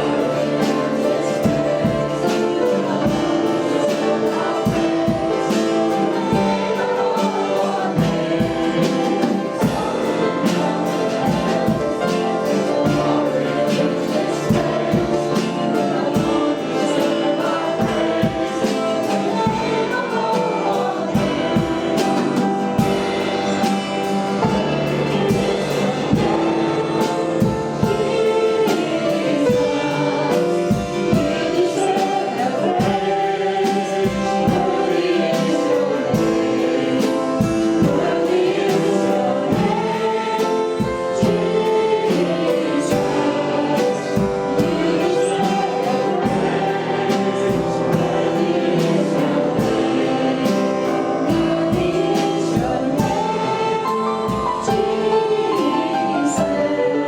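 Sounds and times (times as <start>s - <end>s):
group singing gospel song: 0.0s - 57.0s
instrumental accompaniment: 0.0s - 57.0s
steady drum beat: 0.0s - 57.0s.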